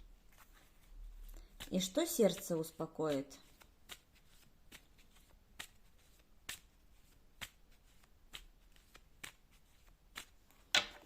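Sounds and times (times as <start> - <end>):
cards clicking onto table: 10.2 - 11.0.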